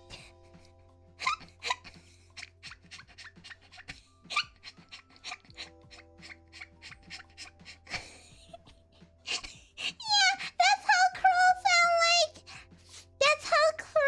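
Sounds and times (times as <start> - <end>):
soft background music: 0.0 - 14.0.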